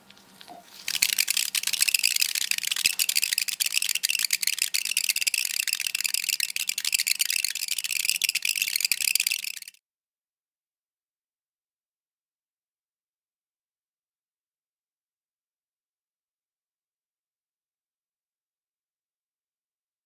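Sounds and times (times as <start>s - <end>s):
beads shrieking on hot pan: 0.6s - 9.8s
rapid crackling clicks: 0.8s - 9.8s.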